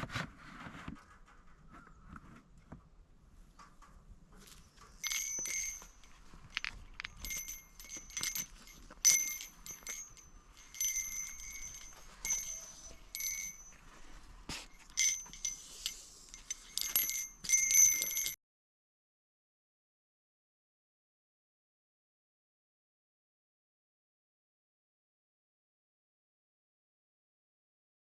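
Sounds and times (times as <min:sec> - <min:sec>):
short metallic ringing: 0:05.0 - 0:06.1, 0:07.1 - 0:13.8.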